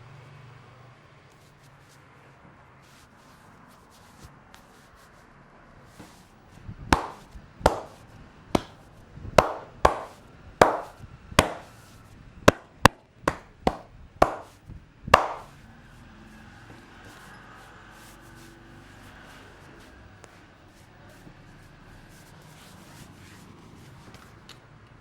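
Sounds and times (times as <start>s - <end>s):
hands slapping head: 6.9s - 8.0s, 8.6s - 8.8s, 9.4s - 11.7s, 12.5s - 14.6s, 15.2s - 15.5s.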